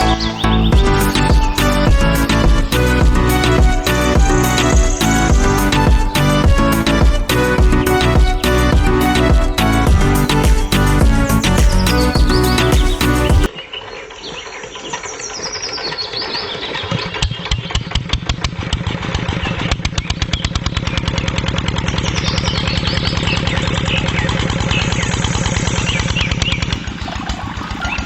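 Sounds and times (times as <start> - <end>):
birds chirping: 0.0 - 17.7, 20.0 - 28.0
small engine running: 16.9 - 28.0.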